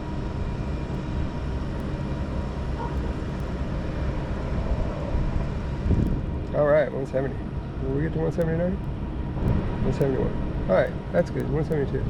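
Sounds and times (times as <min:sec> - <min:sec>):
low rumble and hum: 0:00.0 - 0:12.0.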